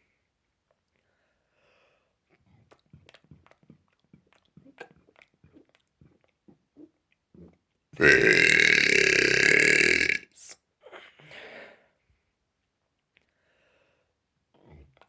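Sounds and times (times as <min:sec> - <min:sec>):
mouth smacking: 0:02.3 - 0:10.6
man burping loudly: 0:08.0 - 0:10.3.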